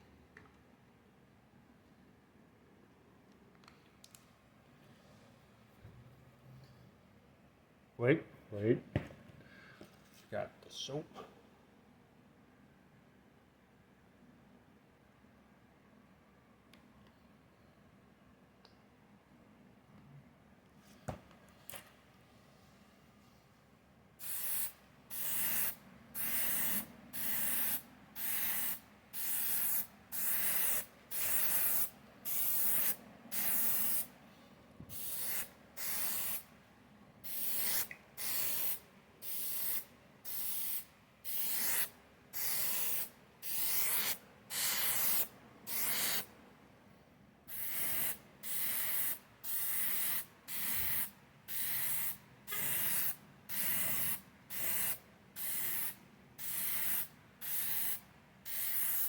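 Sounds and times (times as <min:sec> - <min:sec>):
spray paint can bursts: 0:24.2 - 0:34.1, 0:34.9 - 0:36.4, 0:37.3 - 0:46.2, 0:47.5 - 0:59.0.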